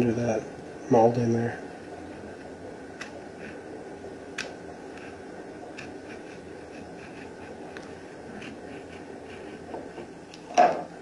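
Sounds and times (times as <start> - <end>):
steady low hiss: 0.0 - 11.0
blade scratching vinyl film: 1.6 - 10.2
sharp clicks: 4.4 - 4.6.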